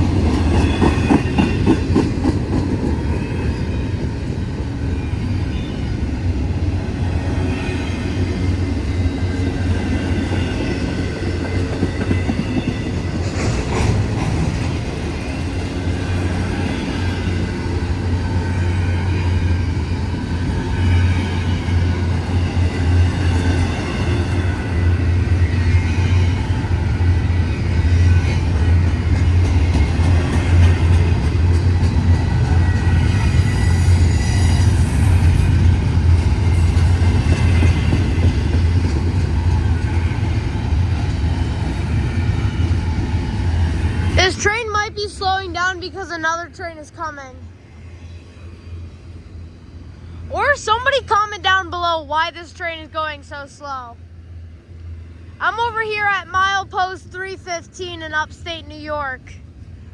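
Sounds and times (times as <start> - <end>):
wheels clacking over rail joints: 0.0 - 4.7
freight train low rumble: 0.0 - 59.9.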